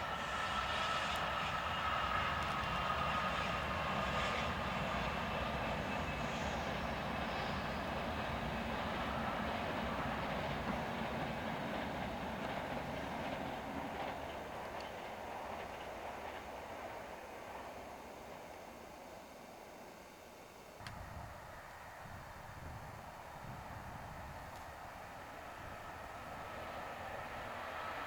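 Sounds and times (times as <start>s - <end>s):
train rumbling: 0.0s - 20.1s, 20.7s - 28.0s
faint whine: 15.7s - 28.0s.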